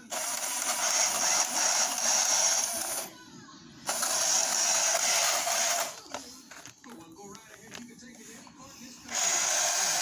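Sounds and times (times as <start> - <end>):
toy car motor whirring: 0.0 - 3.2, 3.8 - 6.7, 9.1 - 10.0.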